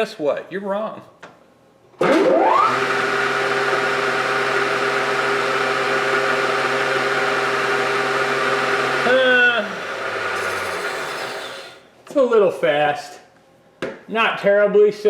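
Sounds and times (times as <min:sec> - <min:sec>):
mill motor spinning up and whirring: 0:02.0 - 0:11.8.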